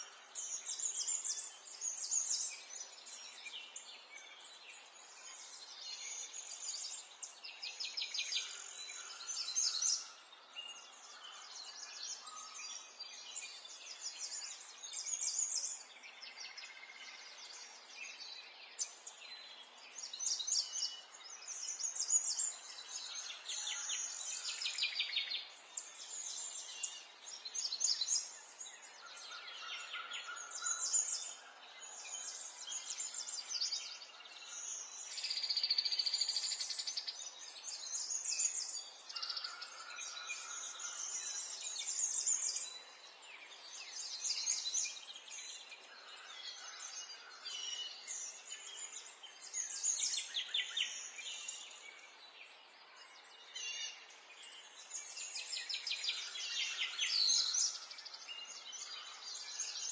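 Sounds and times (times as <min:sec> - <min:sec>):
songbirds singing: 0:00.0 - 0:59.9.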